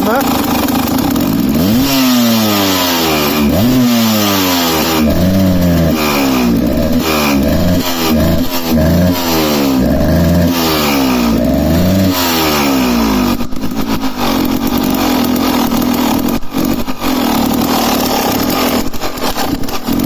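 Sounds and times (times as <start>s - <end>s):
two-stroke engine revving and misfiring: 0.0s - 20.0s.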